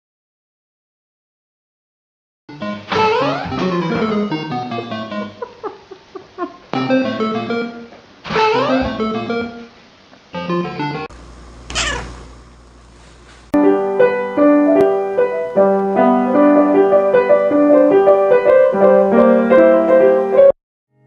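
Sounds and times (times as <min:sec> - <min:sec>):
sound falling in pitch: 0:03.4 - 0:04.8
piano music: 0:03.5 - 0:05.4, 0:06.8 - 0:07.9, 0:13.6 - 0:20.6.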